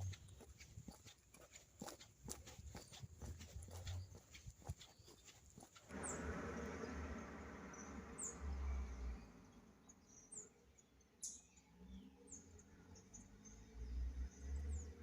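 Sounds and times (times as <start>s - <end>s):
small bird chirping: 0.0s - 6.2s
low rumble: 5.9s - 10.3s.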